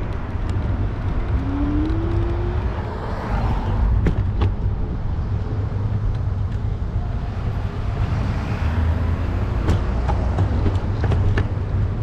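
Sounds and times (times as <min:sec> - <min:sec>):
street traffic: 0:00.0 - 0:12.0
wind rumble on microphone: 0:00.0 - 0:12.0
vehicle passing: 0:00.8 - 0:04.0.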